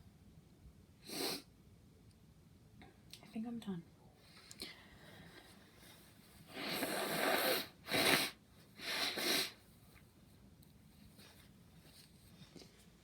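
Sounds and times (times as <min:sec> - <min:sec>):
person blowing air through nose: 0:01.0 - 0:01.5, 0:06.5 - 0:09.6.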